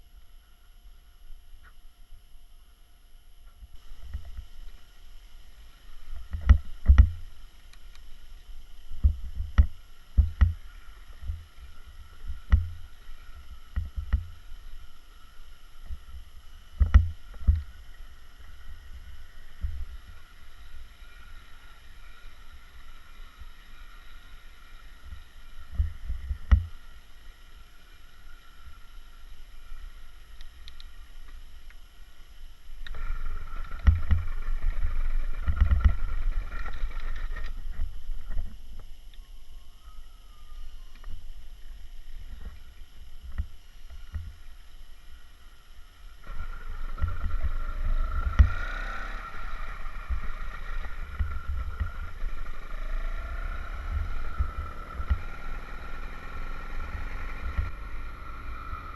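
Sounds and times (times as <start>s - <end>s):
two-stroke engine running: 5.6s - 7.5s, 9.0s - 30.1s, 32.9s - 37.9s, 46.2s - 58.9s.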